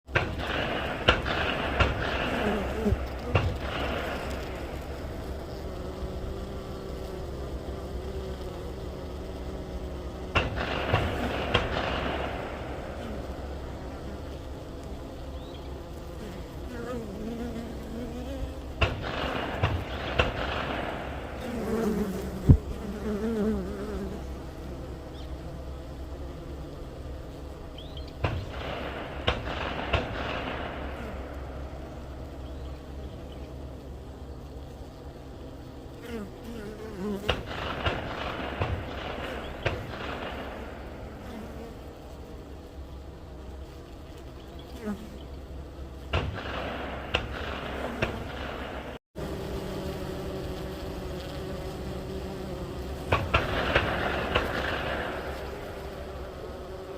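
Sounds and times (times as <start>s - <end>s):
honeybees buzzing: 0.1s - 56.9s
gunshots cracking: 0.2s - 4.7s, 10.4s - 13.0s, 18.8s - 21.4s, 28.3s - 31.3s, 37.3s - 41.0s, 46.1s - 49.0s, 53.1s - 55.4s.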